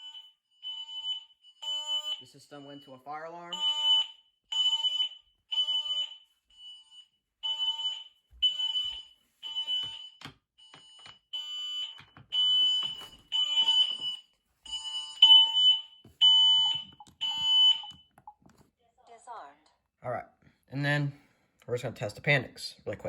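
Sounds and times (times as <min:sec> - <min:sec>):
smoke alarm beeping: 0:00.0 - 0:18.4.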